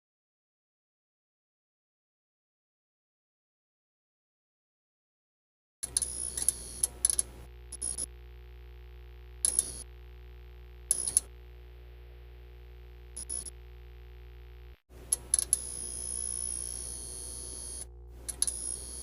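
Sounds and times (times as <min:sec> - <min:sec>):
electrical hum: 0:05.8 - 0:19.0
glitchy static with high whine: 0:05.9 - 0:19.0.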